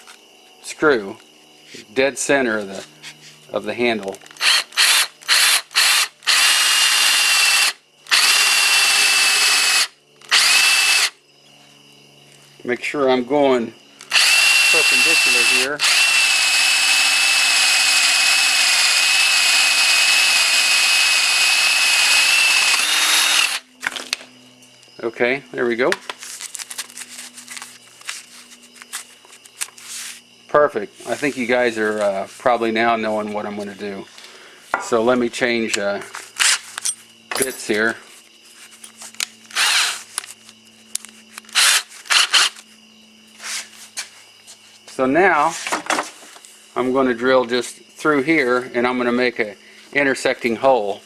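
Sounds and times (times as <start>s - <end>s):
power drill boring into wood: 4.4s - 11.2s, 14.1s - 23.6s, 39.5s - 40.1s, 41.5s - 42.6s.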